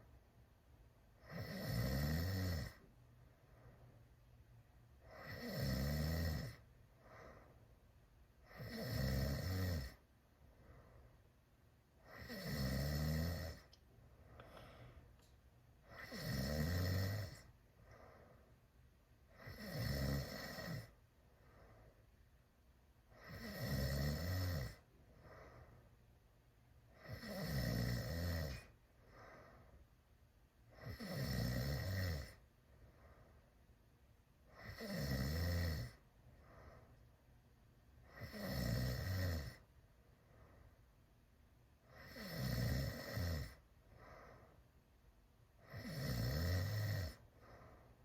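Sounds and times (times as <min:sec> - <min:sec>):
person snoring loudly: 0:01.2 - 0:02.8, 0:05.1 - 0:06.6, 0:08.5 - 0:10.0, 0:12.1 - 0:13.7, 0:15.9 - 0:17.5, 0:19.4 - 0:20.9, 0:23.2 - 0:24.8, 0:27.0 - 0:28.7, 0:30.8 - 0:32.4, 0:34.6 - 0:36.0, 0:38.1 - 0:39.6, 0:41.9 - 0:43.6, 0:45.6 - 0:47.2
faint breathing: 0:02.7 - 0:04.2, 0:06.5 - 0:07.8, 0:09.9 - 0:11.4, 0:13.5 - 0:16.2, 0:17.2 - 0:19.4, 0:20.8 - 0:22.2, 0:24.7 - 0:26.1, 0:28.5 - 0:30.0, 0:32.2 - 0:33.8, 0:35.9 - 0:37.2, 0:39.5 - 0:41.0, 0:43.5 - 0:44.9, 0:47.1 - 0:48.0.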